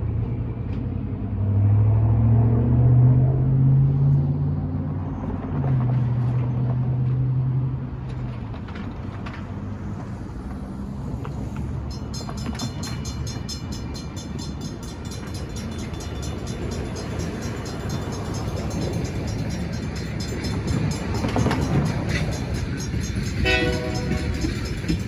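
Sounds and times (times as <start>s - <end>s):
diesel locomotive engine rumbling: 3.1s - 25.0s
rapid high ringing: 11.6s - 25.0s.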